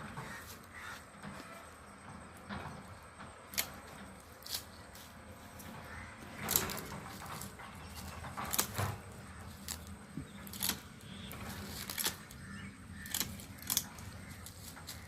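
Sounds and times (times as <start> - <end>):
pruning shears snipping twigs: 3.5 - 5.2, 6.4 - 15.0.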